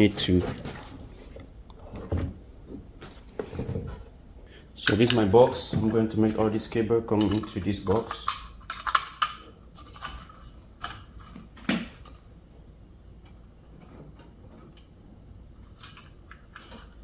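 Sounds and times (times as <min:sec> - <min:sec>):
cables clicking and knocking: 0:04.8 - 0:12.3.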